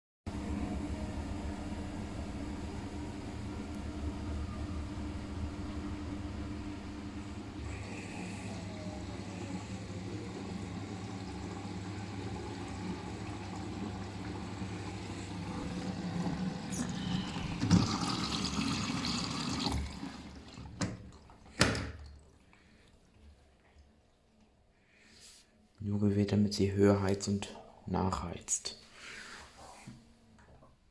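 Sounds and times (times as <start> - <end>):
water rushing through machine: 0.3 - 22.4
washing machine humming: 0.3 - 24.8.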